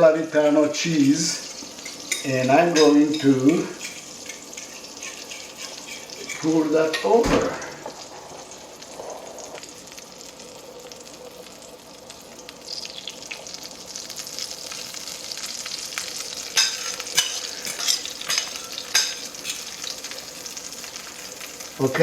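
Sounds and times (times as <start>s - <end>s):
egg mixture sizzling in hot dish: 0.0s - 22.0s
sharp crackles: 7.5s - 21.9s.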